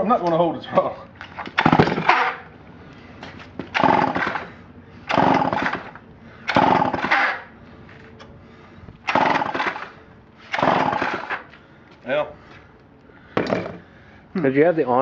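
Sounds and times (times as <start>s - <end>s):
engine turning over: 1.2s - 2.5s, 3.2s - 7.5s, 9.0s - 11.6s
chainsaw starter cord pulls: 1.3s - 2.5s, 3.6s - 4.5s, 5.1s - 7.5s, 9.1s - 9.9s, 10.5s - 11.5s.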